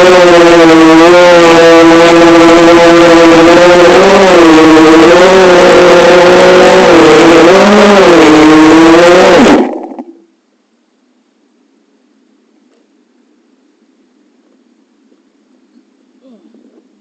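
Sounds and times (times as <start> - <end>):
quadcopter motors whining: 0.0 - 10.2.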